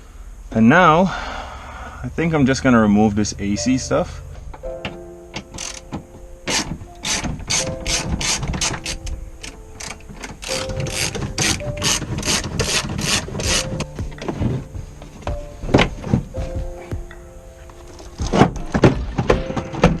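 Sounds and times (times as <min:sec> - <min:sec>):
ratchet wrench clicking: 0:05.4 - 0:05.9, 0:06.5 - 0:13.9.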